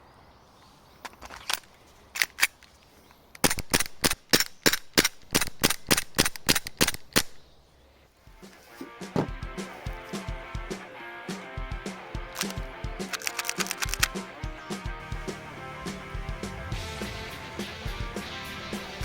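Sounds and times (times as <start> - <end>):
music: 8.3 - 19.0
light clicks: 12.4 - 14.2.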